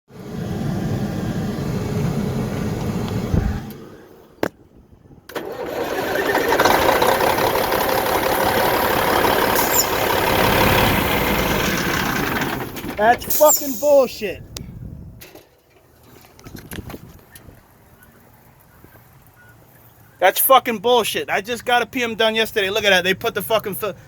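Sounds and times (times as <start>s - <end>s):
diesel truck engine running: 0.2s - 4.2s, 5.3s - 14.2s.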